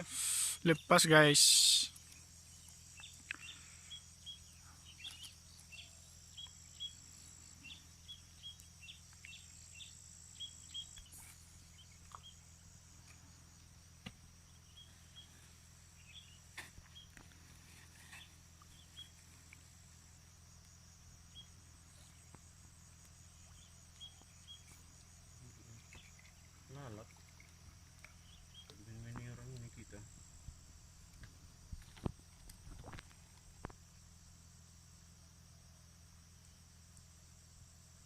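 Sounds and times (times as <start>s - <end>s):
insect chirps: 0.0s - 38.0s
insect chorus drone: 0.0s - 38.0s.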